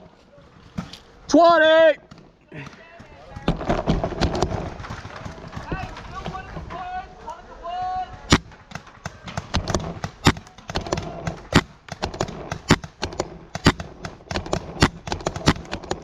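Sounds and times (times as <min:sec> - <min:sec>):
paintball markers firing: 0:08.3 - 0:16.0.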